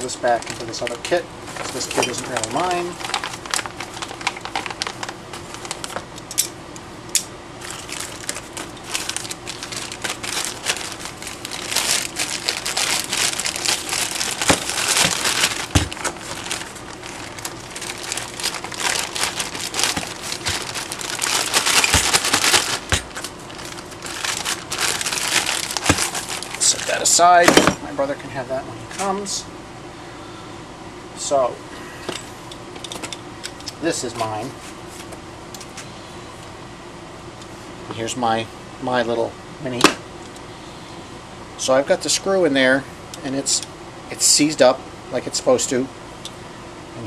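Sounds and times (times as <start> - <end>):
plastic packaging crinkling: 0.0 - 6.2, 7.6 - 27.7.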